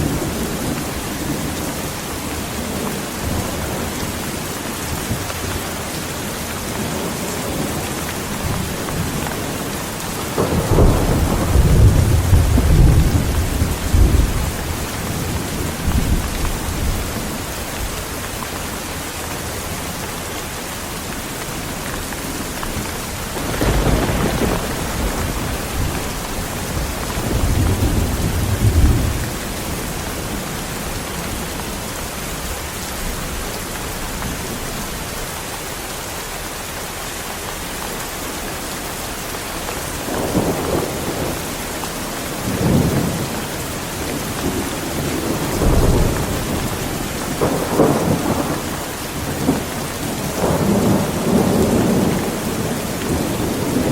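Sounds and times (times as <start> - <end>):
heavy rain falling: 0.0 - 53.9
thunder rumbling: 6.7 - 18.4, 21.5 - 35.1, 40.0 - 53.9.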